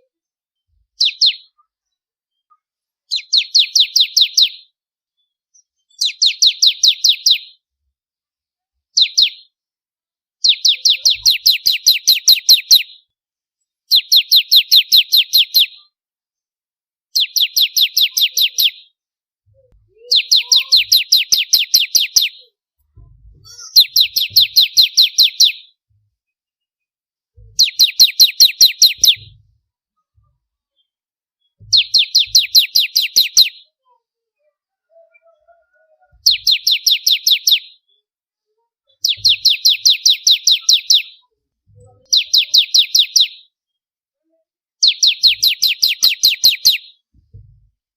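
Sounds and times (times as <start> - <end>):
bird singing high chirps: 0.0 - 4.8, 5.6 - 7.6, 8.9 - 9.6, 10.4 - 13.1, 13.9 - 16.0, 17.1 - 25.8, 27.4 - 29.5, 30.2 - 38.0, 38.9 - 41.3, 42.0 - 43.6, 44.8 - 47.5
faint low knocks: 22.9 - 23.6.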